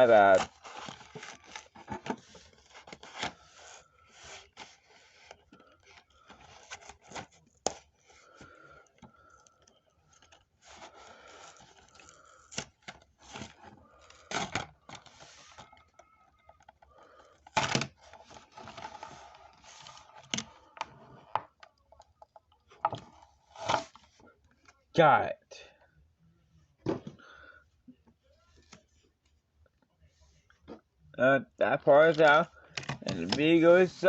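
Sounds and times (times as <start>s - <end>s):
plastic packaging crinkling: 0.0s - 7.9s.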